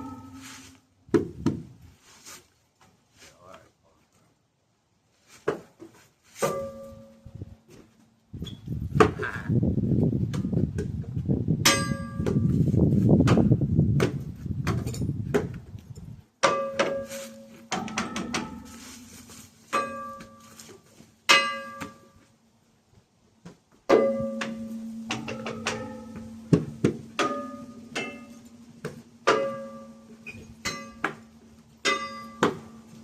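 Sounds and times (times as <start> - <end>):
metal object clanging: 0.0 - 0.8, 24.0 - 26.5, 27.2 - 28.6.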